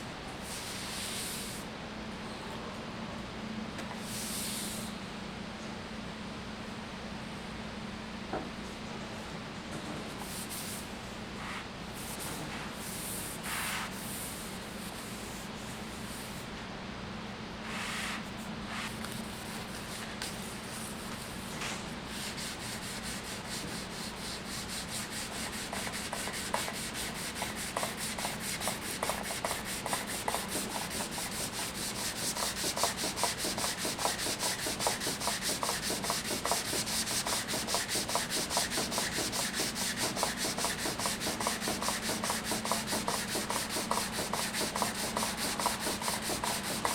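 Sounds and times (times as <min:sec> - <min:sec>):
sandpaper rubbing on wood: 0:22.2 - 0:46.9.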